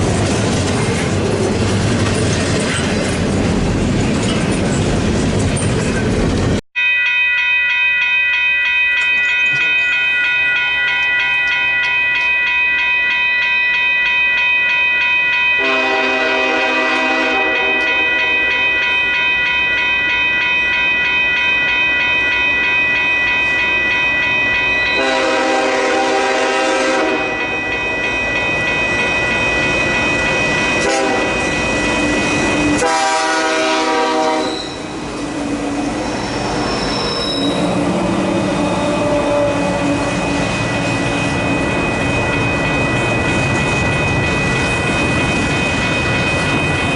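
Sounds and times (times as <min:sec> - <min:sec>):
train air horn blasts: 0:15.6 - 0:18.6, 0:25.0 - 0:27.5, 0:30.8 - 0:31.4, 0:32.0 - 0:35.0
train wheels squealing: 0:27.7 - 0:32.8, 0:34.3 - 0:46.9.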